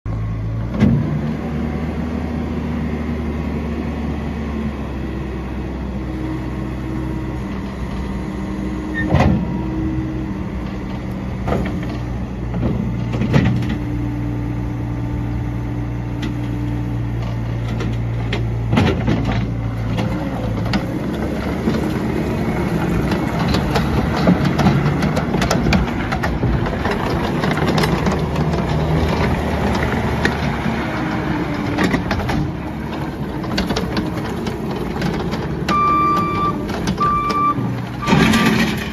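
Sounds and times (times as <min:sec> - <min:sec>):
diesel engine running: 0:00.1 - 0:38.9.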